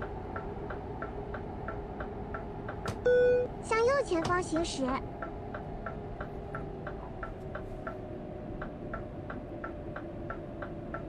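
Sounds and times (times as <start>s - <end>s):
car cabin drone: 0.0s - 11.0s
car turn signal ticking: 0.3s - 3.5s.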